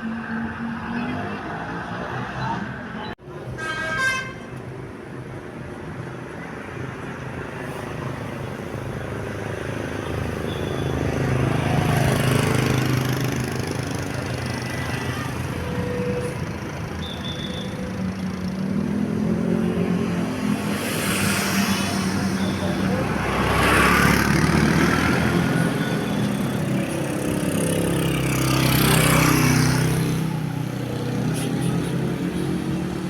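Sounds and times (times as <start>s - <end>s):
vehicle engine and road noise: 0.0s - 33.0s
bus musical horn toot: 3.6s - 4.5s.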